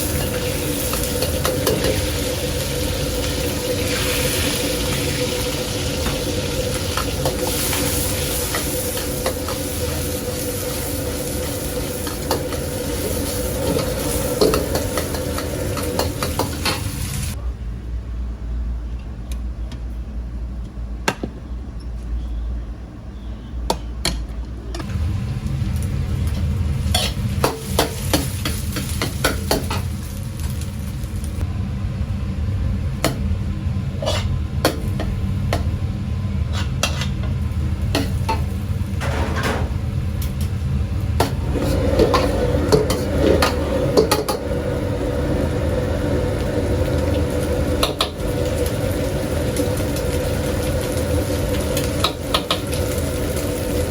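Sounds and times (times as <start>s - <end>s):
food sizzling: 0.0s - 17.4s, 24.8s - 31.5s, 36.5s - 53.9s
metal spatula scraping pan: 34.0s - 34.4s, 36.5s - 37.2s.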